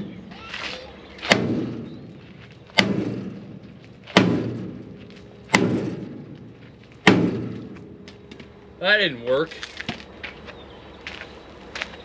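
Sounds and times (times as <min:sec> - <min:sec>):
sledgehammer striking steel: 0:01.2 - 0:08.1.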